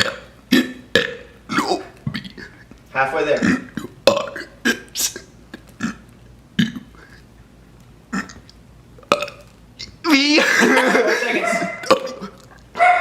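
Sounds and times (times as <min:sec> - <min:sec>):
man burping: 0:00.0 - 0:02.7, 0:03.3 - 0:07.2, 0:08.1 - 0:11.0, 0:11.7 - 0:12.6.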